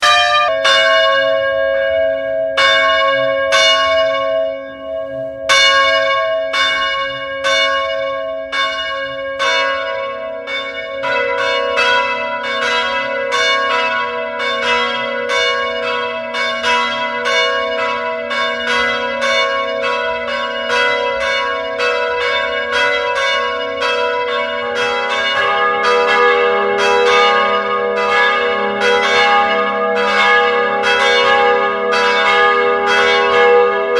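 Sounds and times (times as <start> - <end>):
church bells ringing: 0.0 - 33.9
low bell ringing: 0.0 - 33.9.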